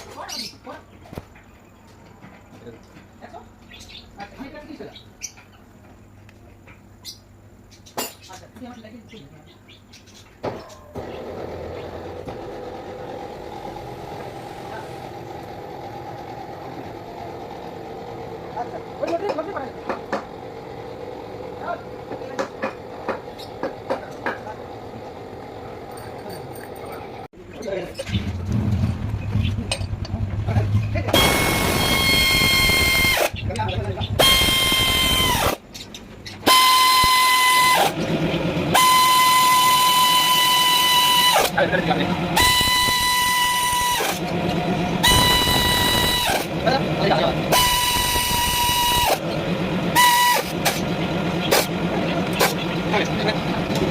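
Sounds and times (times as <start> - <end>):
power tool motor whining: 31.1 - 33.4, 34.2 - 35.6, 36.4 - 53.9
car engine idling: 37.7 - 38.8, 41.4 - 42.5, 44.1 - 53.9.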